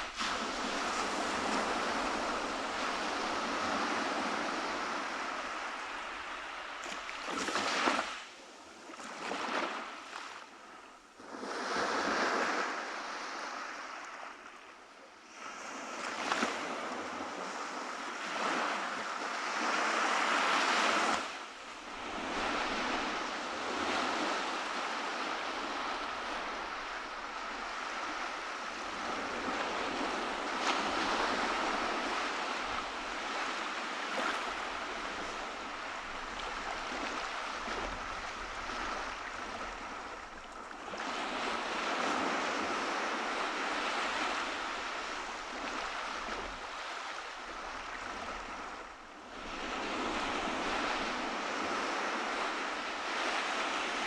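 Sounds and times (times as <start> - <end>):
ocean surf breaking: 0.0 - 6.7, 19.4 - 54.0.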